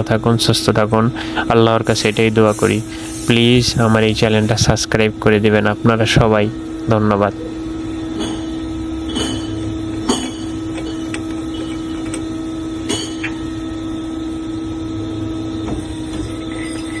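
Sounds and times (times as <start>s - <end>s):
metal lathe humming: 0.8s - 8.5s.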